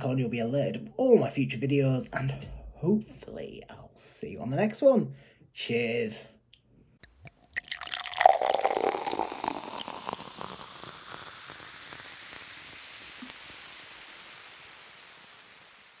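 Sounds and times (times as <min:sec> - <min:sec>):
crackling fizzing hiss: 0:07.1 - 0:16.0.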